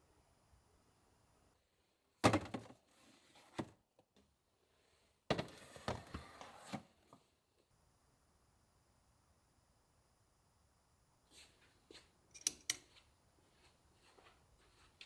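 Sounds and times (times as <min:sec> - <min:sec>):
objects thunking and clattering: 0:02.2 - 0:02.8, 0:05.3 - 0:06.2.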